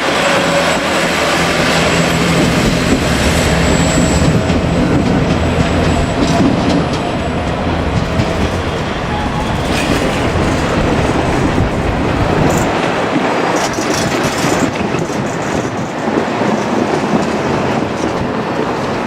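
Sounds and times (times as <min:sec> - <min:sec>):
deep diesel rumble: 0:00.0 - 0:12.7
train wheels clattering over joints: 0:00.2 - 0:19.0.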